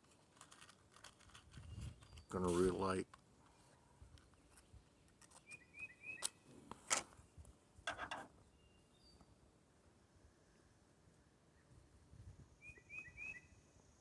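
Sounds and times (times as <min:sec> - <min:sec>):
bird chirps: 0:04.3 - 0:06.4, 0:08.4 - 0:09.3, 0:12.6 - 0:13.8.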